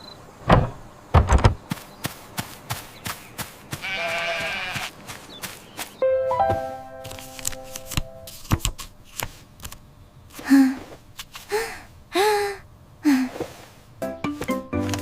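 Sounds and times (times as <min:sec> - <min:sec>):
music: 0:06.0 - 0:08.3, 0:14.0 - 0:15.0.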